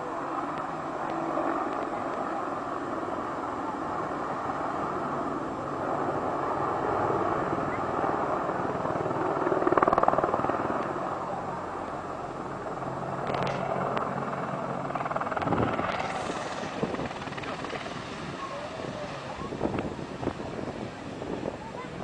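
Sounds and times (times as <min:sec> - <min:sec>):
helicopter rotor beating: 0:00.0 - 0:22.0.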